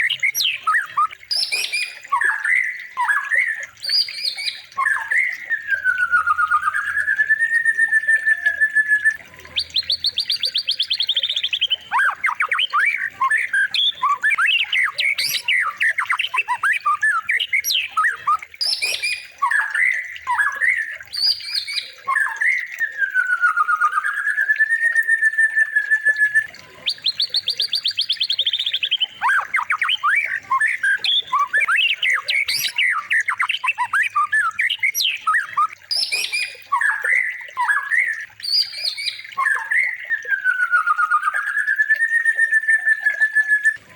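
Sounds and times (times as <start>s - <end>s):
songbird chirps and trills: 0.0s - 43.9s
long wavering whistle: 5.6s - 9.2s.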